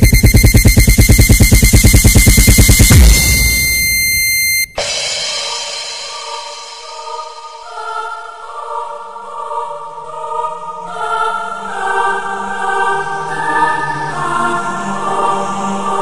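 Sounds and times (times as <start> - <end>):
choir-like sustained chords: 5.4 - 16.0.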